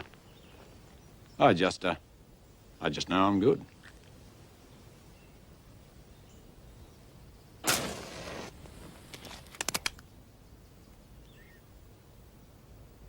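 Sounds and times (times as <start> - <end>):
gunshot: 7.6 - 8.9.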